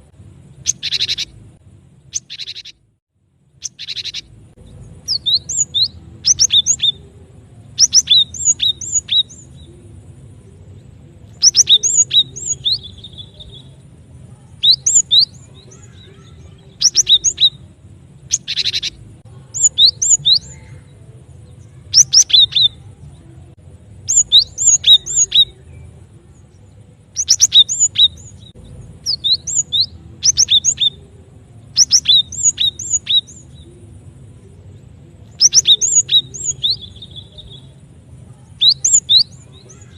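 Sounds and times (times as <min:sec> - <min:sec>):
bird sharp high chirps: 0:00.5 - 0:01.4, 0:02.0 - 0:02.9, 0:03.5 - 0:09.7, 0:11.3 - 0:23.0, 0:24.0 - 0:25.9, 0:26.5 - 0:33.7, 0:35.3 - 0:37.8, 0:38.4 - 0:39.9.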